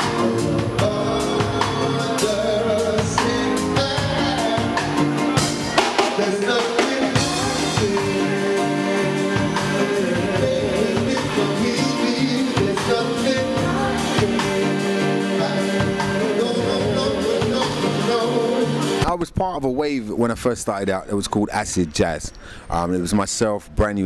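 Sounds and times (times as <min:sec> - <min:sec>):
person singing: 0:00.0 - 0:19.0
drum kit: 0:00.0 - 0:19.1
steady bass line: 0:00.0 - 0:19.1.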